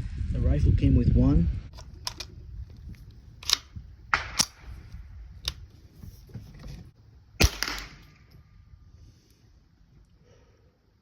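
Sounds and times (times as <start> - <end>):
faint handling noise: 4.8 - 7.0.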